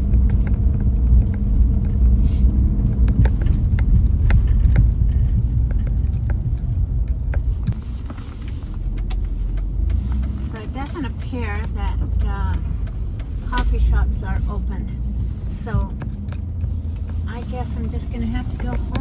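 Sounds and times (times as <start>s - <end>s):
car engine and road rumble: 0.0s - 19.0s
light clicks and knocks: 2.8s - 14.1s, 15.2s - 19.0s.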